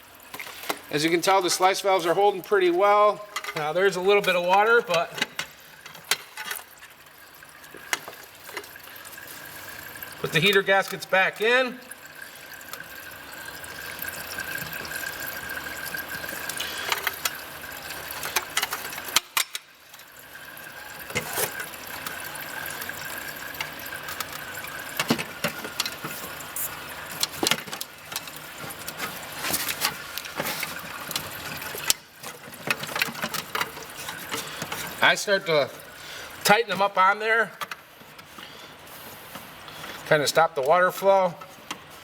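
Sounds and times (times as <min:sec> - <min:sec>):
water trickling: 0:00.0 - 0:42.0
clicks and knocks of fittings: 0:03.3 - 0:07.0, 0:07.6 - 0:09.4, 0:14.3 - 0:20.1, 0:21.0 - 0:35.1, 0:37.6 - 0:38.5.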